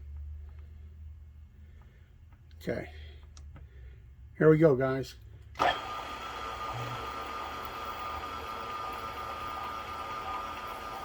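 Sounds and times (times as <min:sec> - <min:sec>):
milling machine spindle whine: 0:05.6 - 0:11.0.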